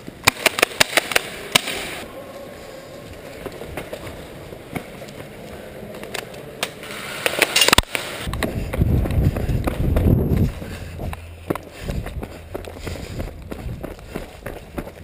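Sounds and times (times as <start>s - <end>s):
airsoft gunfire: 0.2s - 2.0s.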